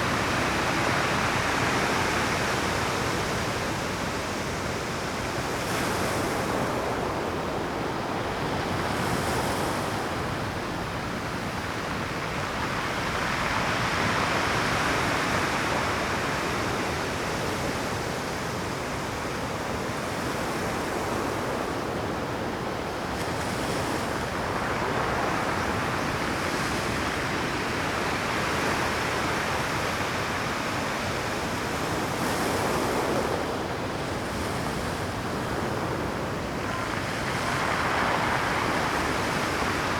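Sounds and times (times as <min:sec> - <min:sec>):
surf breaking on rocky shore: 0:31.7 - 0:39.9.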